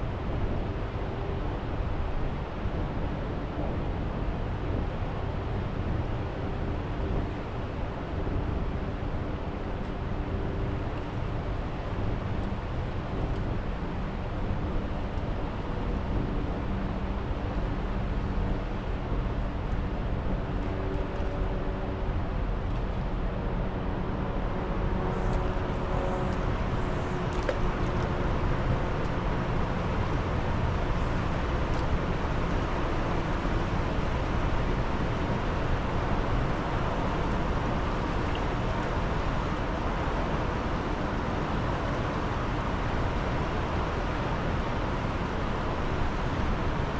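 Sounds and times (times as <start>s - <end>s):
faint low motor hum: 22.7s - 32.7s.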